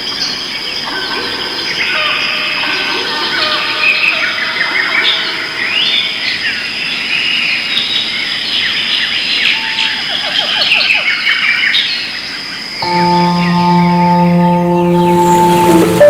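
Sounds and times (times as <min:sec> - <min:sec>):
steady high tone: 0:12.8 - 0:16.0.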